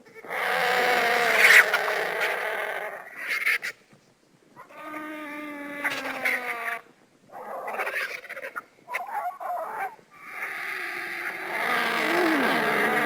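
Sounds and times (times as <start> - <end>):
vulture hoarse calls: 4.6 - 13.0.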